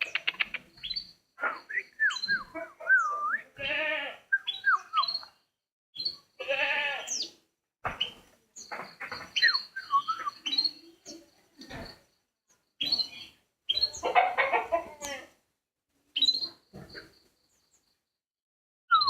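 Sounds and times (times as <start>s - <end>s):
harsh bird calls: 6.0s - 12.0s.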